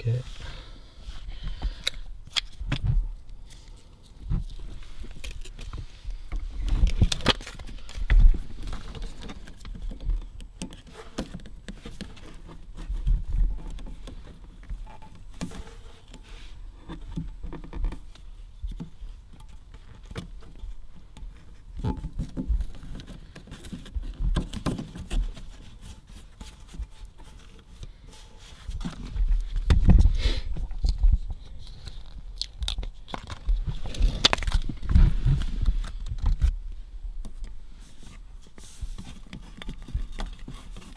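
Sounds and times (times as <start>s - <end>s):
thumps and scrapes: 0.0s - 40.9s
sound-deadening mat crackling: 30.8s - 36.9s.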